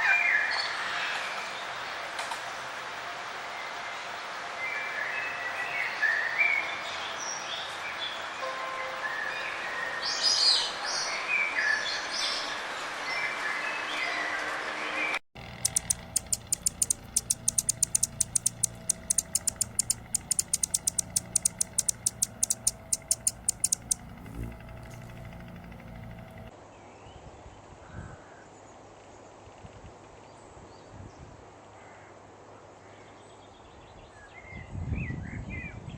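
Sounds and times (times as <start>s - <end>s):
birds high clicking calls: 15.4s - 26.5s
faint bird chirps: 15.4s - 26.5s
steady low hum: 15.4s - 26.5s.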